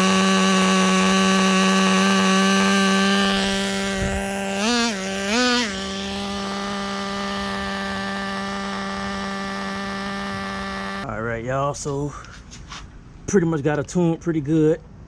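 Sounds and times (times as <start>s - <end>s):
small nitro engine idling: 0.0s - 11.0s.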